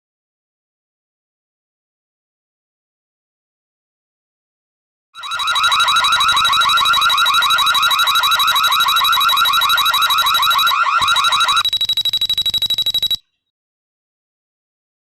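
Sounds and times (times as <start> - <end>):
electronic alarm siren warbling: 5.2 - 12.0, 12.7 - 13.2
fast pulsing alarm beep: 5.2 - 13.2.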